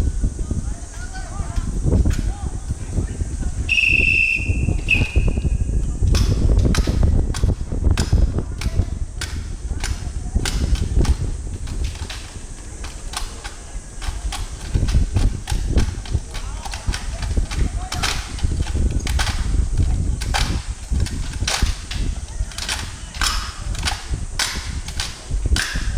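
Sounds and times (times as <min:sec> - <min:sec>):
drill rifles clacking and slapping: 0:00.8 - 0:25.9
whistle blasts: 0:03.6 - 0:05.9.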